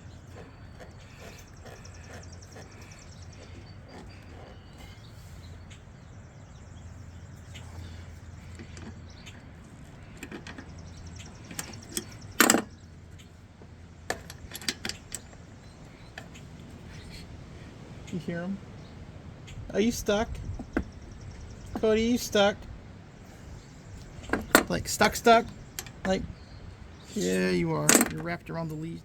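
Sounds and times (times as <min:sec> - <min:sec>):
steady low hum: 0:00.0 - 0:29.0
sharp clicks and knocks: 0:10.2 - 0:15.4, 0:24.0 - 0:24.8, 0:27.8 - 0:28.4.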